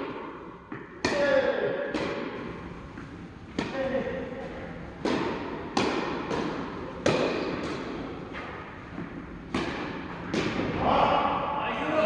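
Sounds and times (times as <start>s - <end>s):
tennis ball bounces: 0.0s - 1.2s, 1.9s - 10.7s
racket striking tennis ball: 0.0s - 10.8s.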